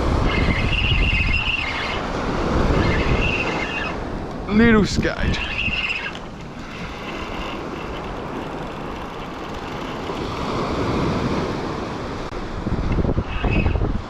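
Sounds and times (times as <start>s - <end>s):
wind buffeting microphone: 0.0s - 14.0s
ocean surf washing onto beach: 6.2s - 13.2s.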